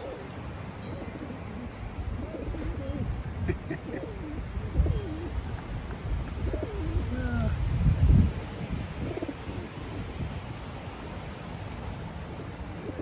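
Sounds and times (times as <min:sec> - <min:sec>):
pigeons cooing: 0:00.0 - 0:07.6, 0:08.4 - 0:10.2, 0:12.7 - 0:13.0.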